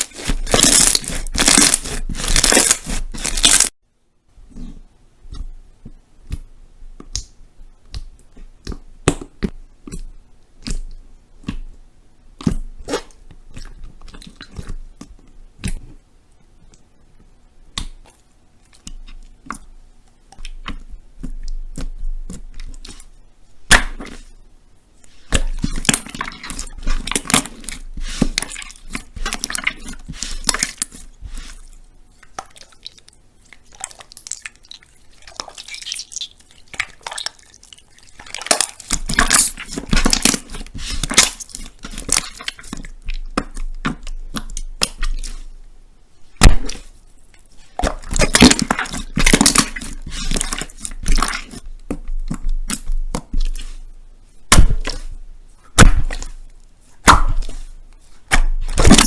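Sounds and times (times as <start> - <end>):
slime squishing with sticky clicks: 0.0 - 3.8, 4.4 - 59.0.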